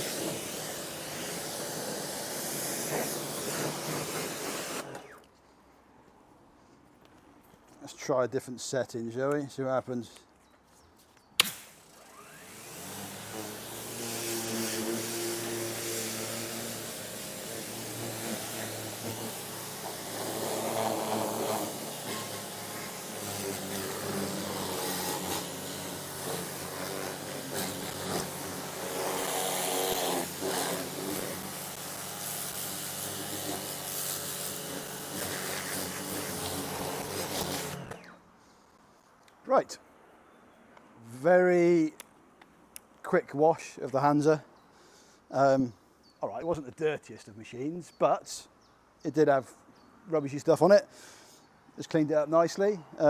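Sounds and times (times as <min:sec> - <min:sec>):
water jet hissing: 0:00.0 - 0:05.1
pump motor humming: 0:11.4 - 0:38.1.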